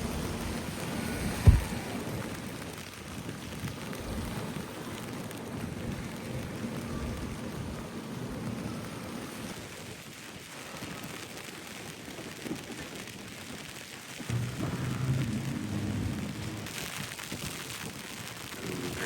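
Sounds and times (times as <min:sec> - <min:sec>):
heavy rain pouring: 0:00.0 - 0:19.0
low rumble: 0:14.3 - 0:16.8.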